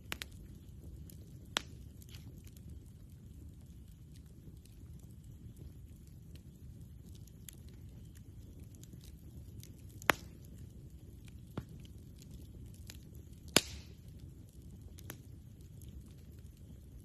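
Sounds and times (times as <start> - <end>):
campfire crackling: 0.0 - 17.0
sharp pops from burning wood: 0.0 - 17.0.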